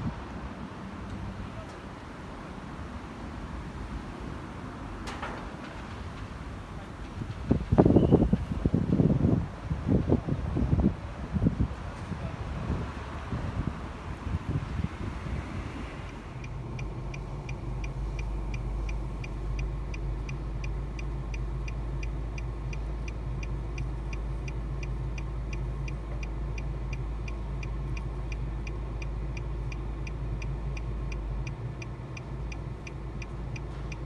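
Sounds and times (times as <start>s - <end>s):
rapid even ticking: 16.1s - 34.0s.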